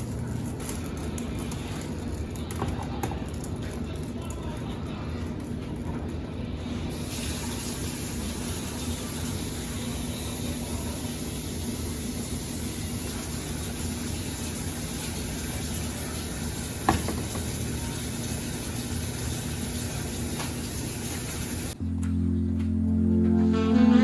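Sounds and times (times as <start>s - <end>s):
low hum: 21.8s - 24.0s.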